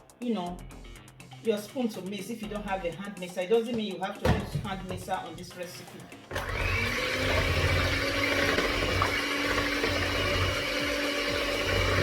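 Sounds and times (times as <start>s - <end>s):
electric hand mixer running: 6.3s - 12.0s.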